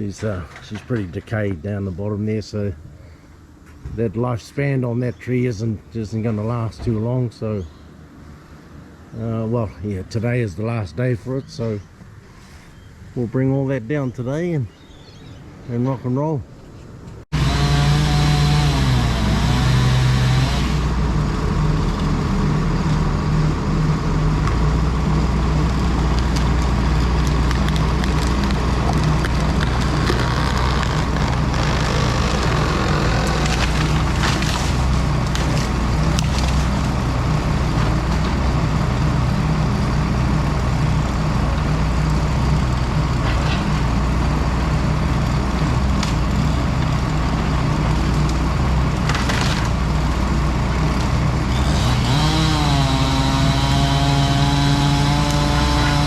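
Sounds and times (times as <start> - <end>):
machinery engine running: 17.3 - 56.0.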